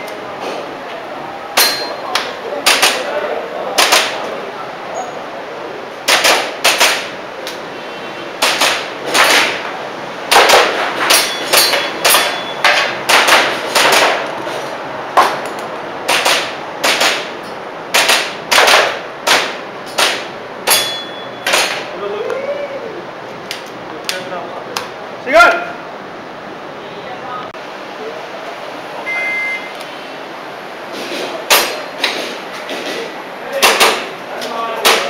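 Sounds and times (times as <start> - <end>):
airsoft pistol shots: 6.0 - 7.1, 8.4 - 9.6, 10.3 - 14.2, 16.1 - 17.3, 17.9 - 21.9
short metallic ring: 20.7 - 21.6.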